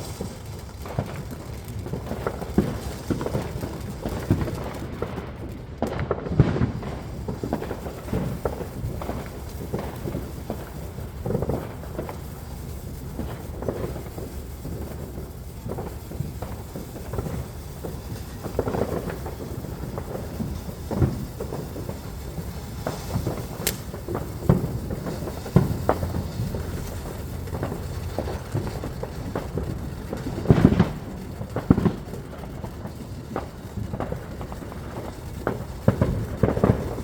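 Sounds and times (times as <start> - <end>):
fireworks booming and popping: 0.0 - 37.0
sharp crack: 0.0 - 37.0
low rumble: 23.5 - 31.3.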